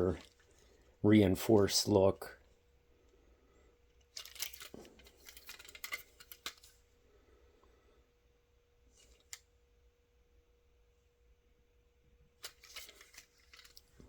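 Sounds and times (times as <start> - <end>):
plastic bricks clicking and rattling: 4.1 - 6.7.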